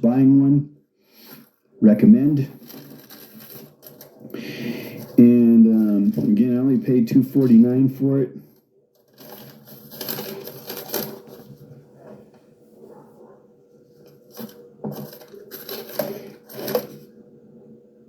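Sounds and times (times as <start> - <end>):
metal drawers sliding and rattling: 14.3 - 17.0.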